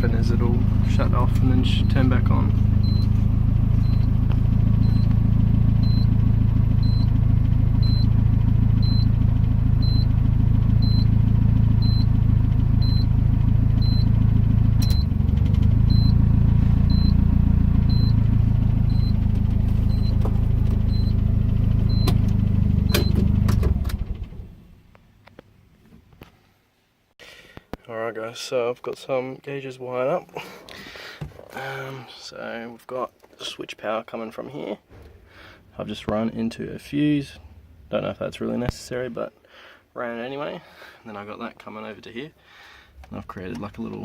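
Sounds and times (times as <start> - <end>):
car engine idling: 0.0 - 24.9, 34.9 - 39.1.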